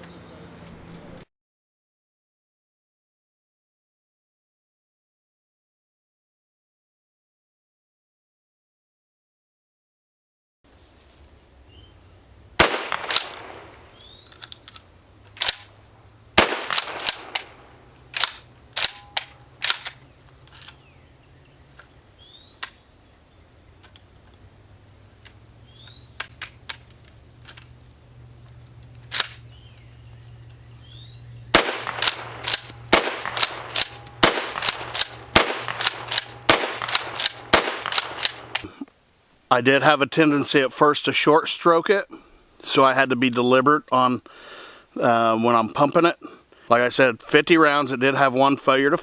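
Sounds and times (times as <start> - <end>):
shotgun shots: 12.6 - 13.9, 16.4 - 20.0, 31.5 - 38.7
shotgun pump clacks and clicks: 14.4 - 15.7, 16.7 - 20.8, 31.7 - 38.6.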